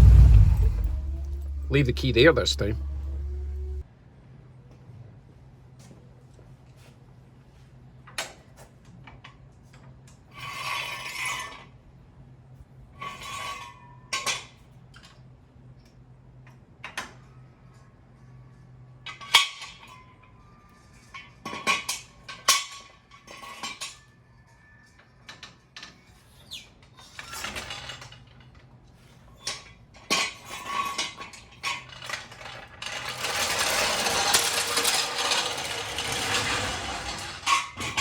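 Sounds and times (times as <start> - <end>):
rattling scrapes: 0.0 - 3.8, 30.2 - 38.0
low steady hum: 0.0 - 5.2
floor jack metal clinks: 32.1 - 38.0.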